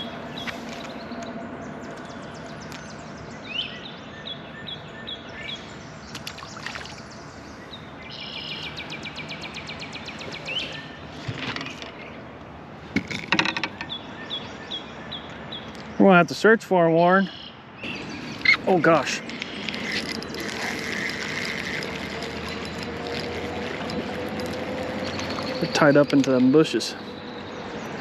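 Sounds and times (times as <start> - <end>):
outdoor background noise: 0.0 - 28.0
songbirds chirping: 0.0 - 28.0
buzzy bird trill: 17.3 - 27.7.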